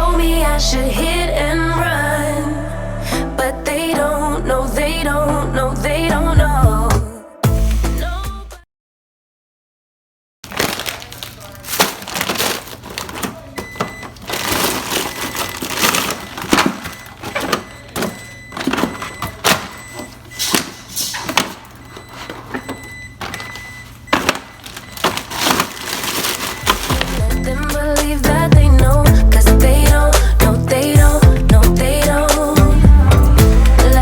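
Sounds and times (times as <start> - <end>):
items being handled and set down: 10.6 - 27.4.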